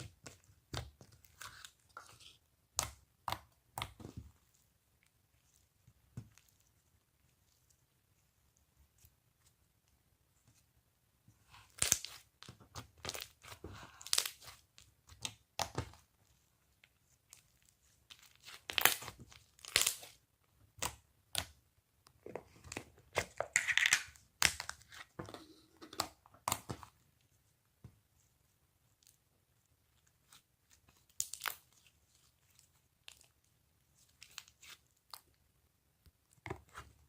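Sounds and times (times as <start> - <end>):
slime crackling and popping: 11.7 - 16.0, 18.1 - 21.6.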